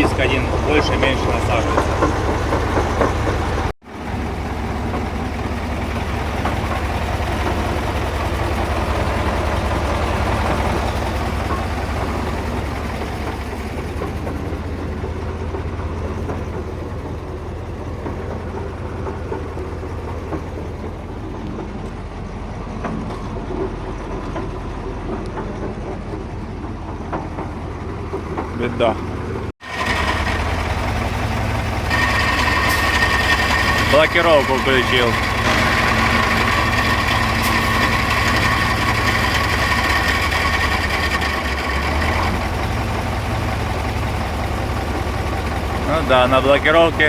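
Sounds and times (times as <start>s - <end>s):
truck diesel engine rumbling: 0.0s - 47.0s.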